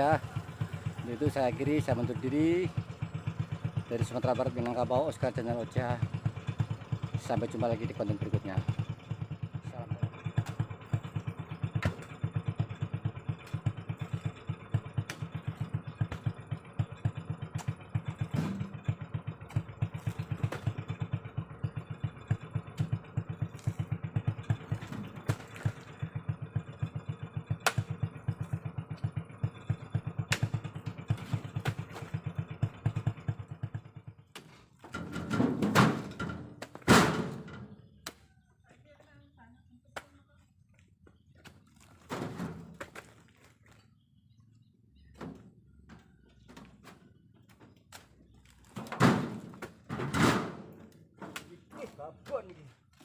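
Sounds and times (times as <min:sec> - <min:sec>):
motorcycle engine running: 0:00.0 - 0:53.0.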